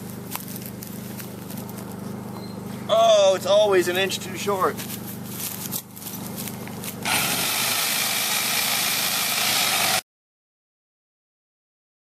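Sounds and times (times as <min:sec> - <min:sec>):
vehicle engine idling: 0:00.0 - 0:09.4
loud steady hiss: 0:07.0 - 0:10.0.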